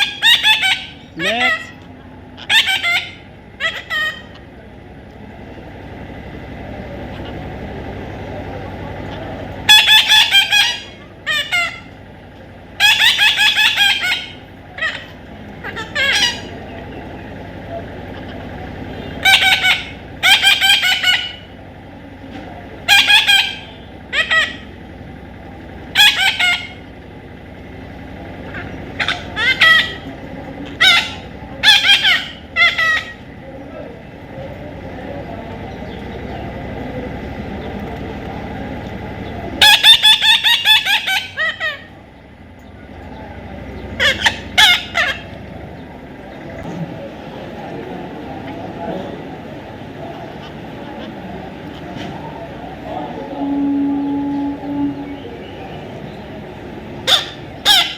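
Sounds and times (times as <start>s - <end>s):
parrot squawking: 0.0s - 4.5s, 9.0s - 12.0s, 12.8s - 16.7s, 18.1s - 21.6s, 22.8s - 24.8s, 25.9s - 27.0s, 28.4s - 33.4s, 39.5s - 42.0s, 43.8s - 45.4s, 57.0s - 57.9s
low background rumble: 0.0s - 57.9s.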